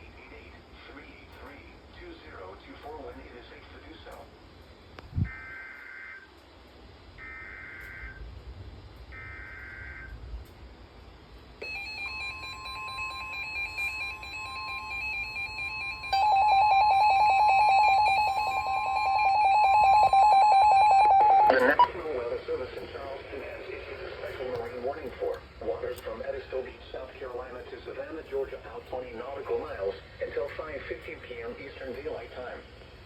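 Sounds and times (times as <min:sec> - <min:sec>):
buzzy data bursts: 0:11.6 - 0:21.9
fast pulsing beep: 0:11.6 - 0:21.9
layered alarm tones: 0:11.6 - 0:21.9
steady alarm tone: 0:11.6 - 0:21.9.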